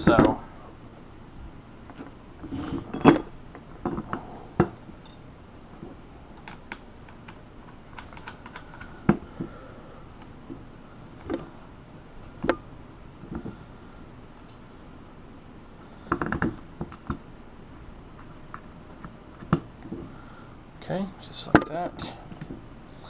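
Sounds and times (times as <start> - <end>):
metal parts clicking and knocking: 6.4 - 9.2.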